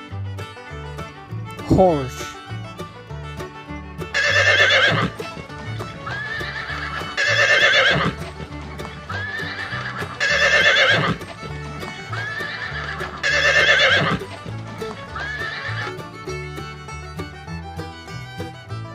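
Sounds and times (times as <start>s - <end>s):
background music with bass line: 0.0s - 18.9s
horse whinnying: 4.1s - 5.2s, 6.0s - 8.4s, 9.0s - 11.3s, 12.1s - 14.3s, 15.1s - 16.0s.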